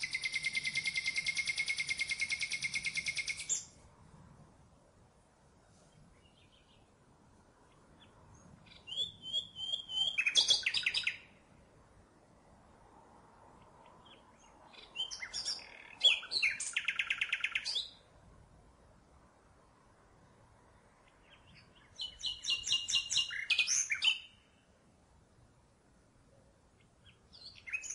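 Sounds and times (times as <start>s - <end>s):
nightingale singing: 0.0s - 3.8s, 6.1s - 6.9s, 7.6s - 11.4s, 13.6s - 18.1s, 21.0s - 24.6s, 26.7s - 27.9s.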